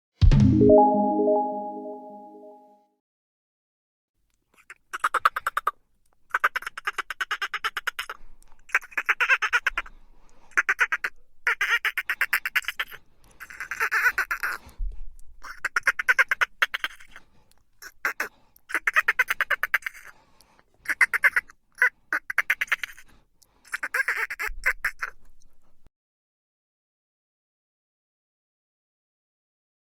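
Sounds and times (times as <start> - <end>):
dolphin chattering calls: 10.5 - 14.6, 15.4 - 17.2, 17.8 - 20.1, 20.8 - 23.0, 23.7 - 25.2.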